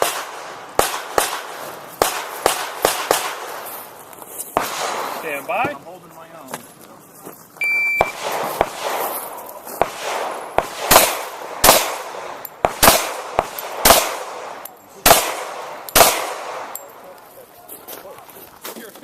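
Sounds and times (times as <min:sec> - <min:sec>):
pistol shots with echo: 0:00.0 - 0:03.7, 0:04.6 - 0:05.7, 0:08.0 - 0:17.2
shot timer beep: 0:07.6 - 0:08.2.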